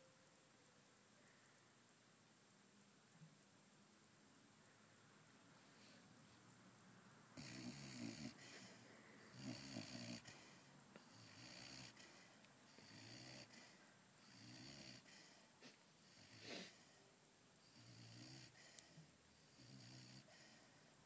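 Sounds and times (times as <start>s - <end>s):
puppy snoring faintly: 7.4s - 17.0s, 17.6s - 20.8s.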